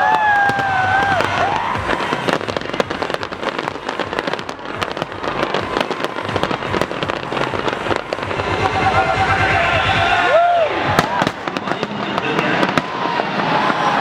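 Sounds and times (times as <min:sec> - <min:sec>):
fireworks crackling and popping: 0:00.0 - 0:14.0.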